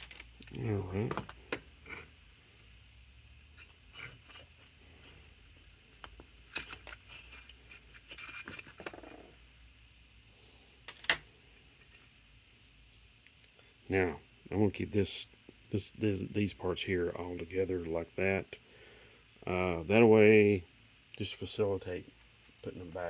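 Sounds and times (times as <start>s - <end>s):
small metal parts clicking and clinking: 0.0s - 2.7s, 5.5s - 9.3s, 10.8s - 12.1s.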